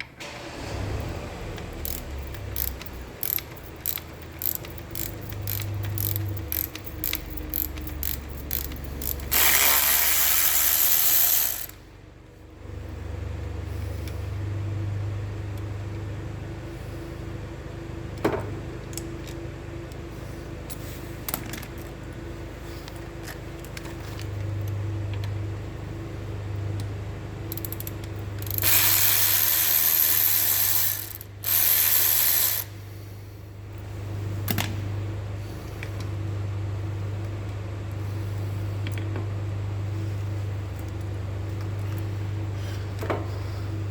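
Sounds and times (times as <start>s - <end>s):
ratchet wrench clicking: 1.5s - 11.8s, 27.5s - 32.8s.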